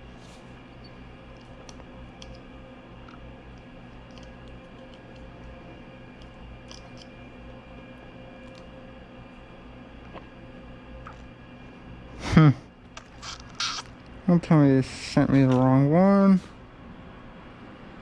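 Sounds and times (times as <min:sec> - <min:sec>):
steady low hum: 0:00.0 - 0:18.0
clicks of small parts handled: 0:01.4 - 0:02.4, 0:04.0 - 0:05.3, 0:06.2 - 0:07.1.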